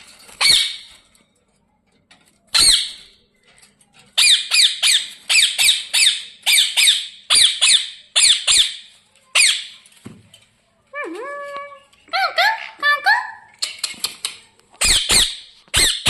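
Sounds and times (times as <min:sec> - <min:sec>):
parakeet screeching: 0:14.8 - 0:16.0.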